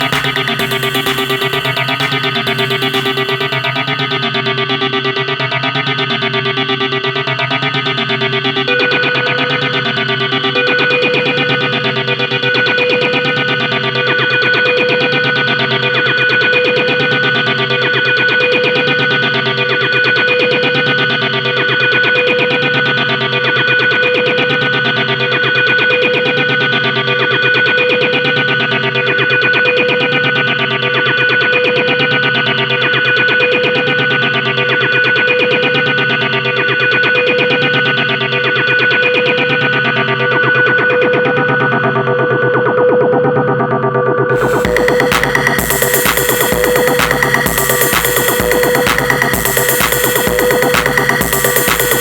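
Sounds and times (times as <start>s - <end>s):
distorted guitar drone: 0.0s - 4.8s, 44.3s - 52.0s.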